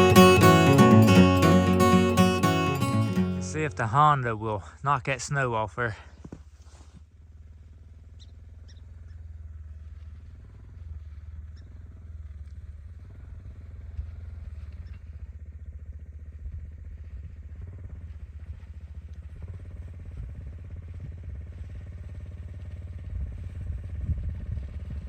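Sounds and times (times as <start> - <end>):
atv engine running: 7.4 - 25.0.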